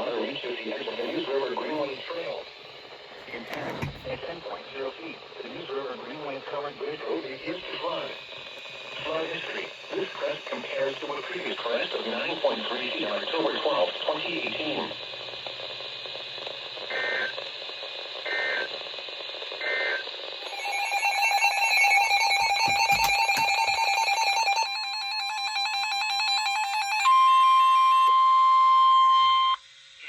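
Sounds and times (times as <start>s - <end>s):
radio hiss: 0.0s - 27.0s
warbling data bursts: 18.2s - 18.8s, 19.6s - 27.0s.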